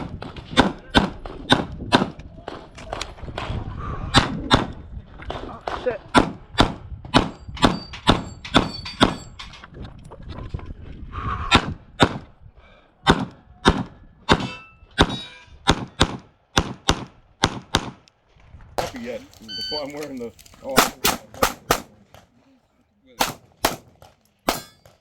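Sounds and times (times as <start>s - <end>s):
rapid pistol fire: 20.8s - 22.1s, 23.2s - 25.0s.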